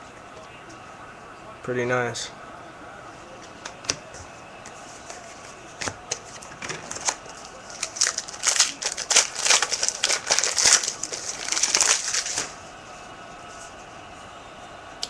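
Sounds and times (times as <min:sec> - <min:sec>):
foil wrapper crackling: 0:06.8 - 0:12.6.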